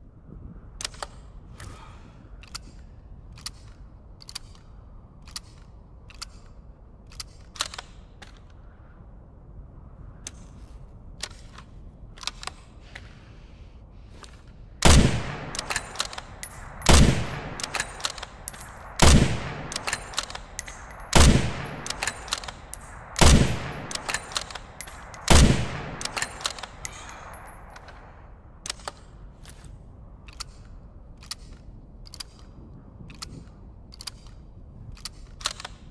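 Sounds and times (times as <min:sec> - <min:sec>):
rifle shots echoing: 0:14.8 - 0:27.6
sharp clicks: 0:14.8 - 0:29.1.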